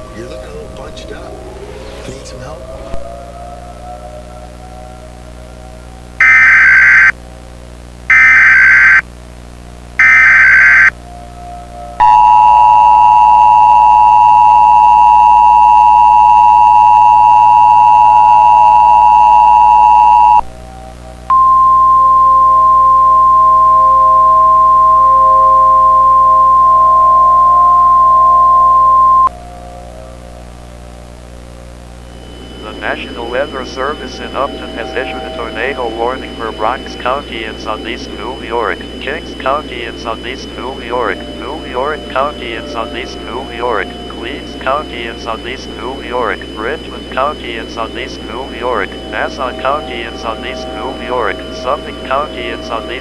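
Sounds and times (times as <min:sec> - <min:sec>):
steady warning tone: 0:00.0 - 0:07.2, 0:08.0 - 0:09.1, 0:09.9 - 0:53.0
screeching data bursts: 0:06.2 - 0:07.1, 0:08.1 - 0:09.0, 0:10.0 - 0:11.0, 0:32.2 - 0:53.0
two-tone attention signal: 0:06.2 - 0:07.1, 0:08.1 - 0:09.0, 0:10.0 - 0:10.9, 0:12.0 - 0:20.4.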